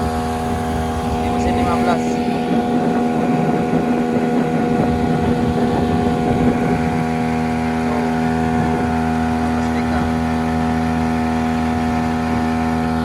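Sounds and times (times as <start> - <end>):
outboard motor running: 0.0 - 13.0
wind noise on microphone: 0.0 - 13.0.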